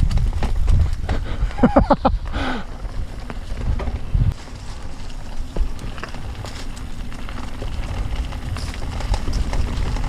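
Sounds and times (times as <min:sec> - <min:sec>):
mountain bike rattling: 0:00.0 - 0:10.0
wind noise on microphone: 0:00.0 - 0:10.0.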